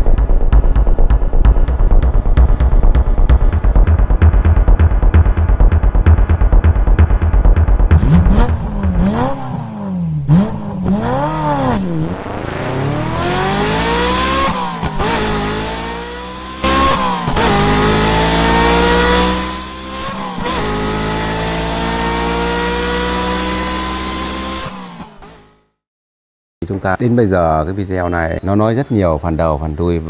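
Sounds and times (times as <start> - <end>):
car engine revving and accelerating: 3.2 - 25.7.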